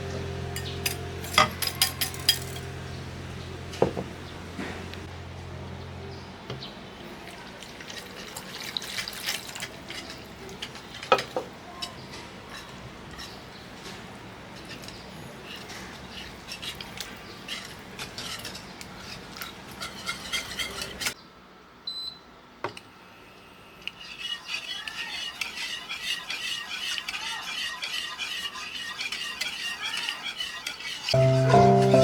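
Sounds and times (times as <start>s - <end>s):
utensils scraping cookware: 0.5s - 2.9s, 7.9s - 21.2s, 23.8s - 32.0s.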